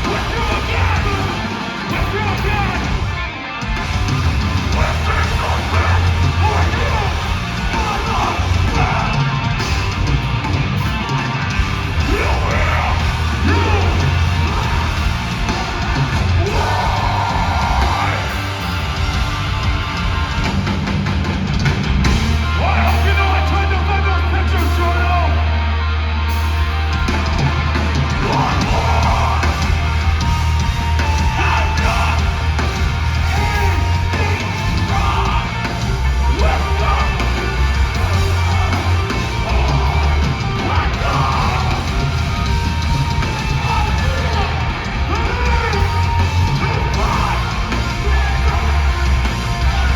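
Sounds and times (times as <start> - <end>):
screamed vocals: 0.0 - 3.0, 4.7 - 9.4, 12.0 - 19.1, 28.1 - 49.9
metalcore band playing live: 0.0 - 49.9.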